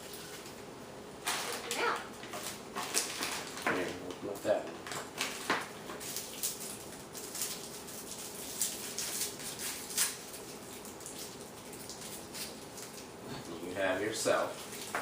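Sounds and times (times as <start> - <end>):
plastic wrapper crinkling: 1.2 - 13.1.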